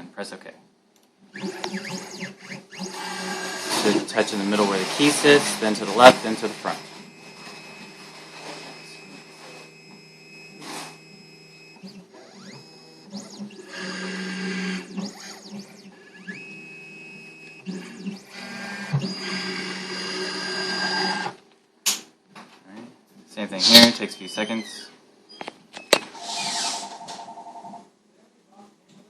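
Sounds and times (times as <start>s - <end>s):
whining machine motor: 1.3s - 21.4s.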